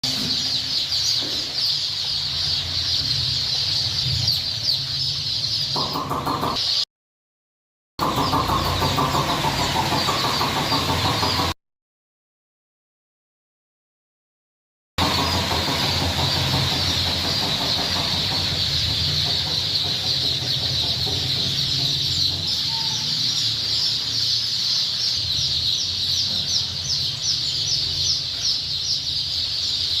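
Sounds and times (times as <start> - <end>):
chicks peeping: 0.0 - 6.8, 8.0 - 11.6, 15.0 - 30.0.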